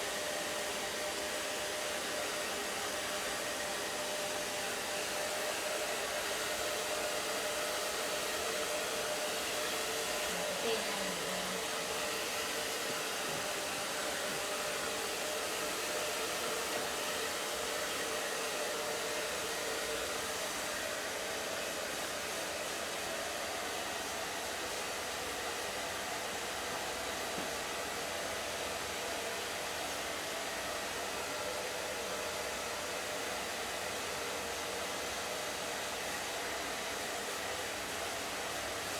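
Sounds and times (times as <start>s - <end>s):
hair dryer blowing: 0.0s - 38.9s.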